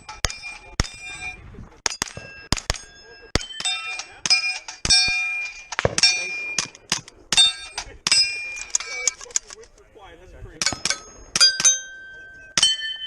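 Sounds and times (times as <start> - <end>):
steel targets ringing: 0.0 - 9.2, 10.6 - 13.0
rapid gunshots: 1.8 - 8.0.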